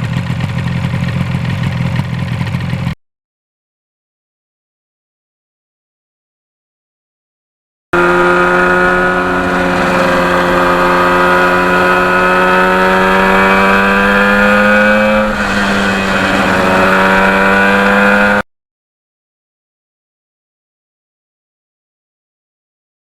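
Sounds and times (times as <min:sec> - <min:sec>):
two-stroke motorcycle engine: 0:00.0 - 0:03.0, 0:08.0 - 0:18.4.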